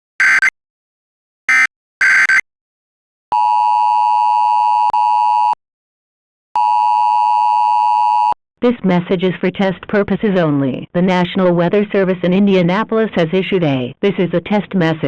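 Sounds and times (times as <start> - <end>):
data tone bursts: 0.2 - 0.5, 1.5 - 2.4
steady electronic alert tone: 0.2 - 0.5, 1.5 - 2.4.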